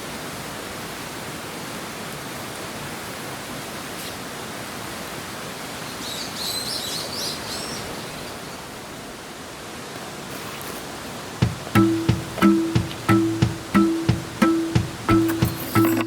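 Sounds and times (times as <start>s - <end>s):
rushing background noise: 11.3s - 16.0s.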